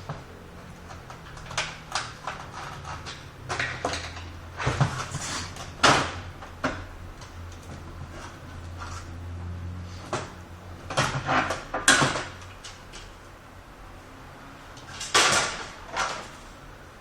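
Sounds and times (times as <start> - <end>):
plastic parts clicking and knocking: 0.0 - 8.9, 10.9 - 13.1
steady low hum: 0.0 - 17.0.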